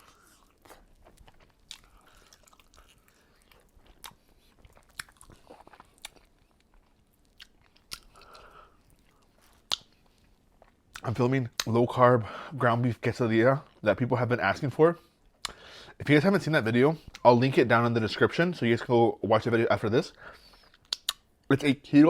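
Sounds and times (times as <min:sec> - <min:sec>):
mouth smacks and clicks: 0:00.0 - 0:11.7, 0:15.3 - 0:15.6, 0:20.3 - 0:21.4
person chewing food: 0:00.0 - 0:11.7, 0:15.1 - 0:15.7, 0:20.3 - 0:21.5.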